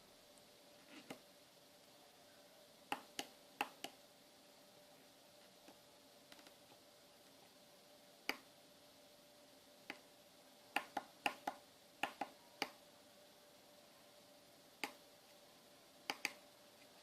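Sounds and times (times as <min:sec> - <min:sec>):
faint steady tone: 0:00.0 - 0:17.0.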